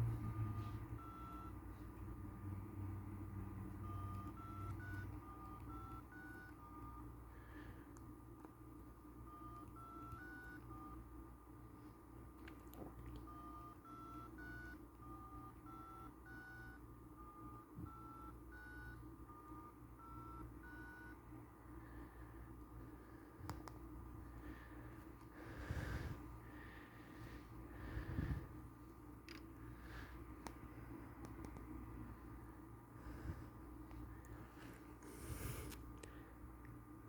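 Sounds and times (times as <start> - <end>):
phone ringtone: 0.0 - 1.9, 3.5 - 7.7, 9.2 - 11.1, 13.2 - 21.2.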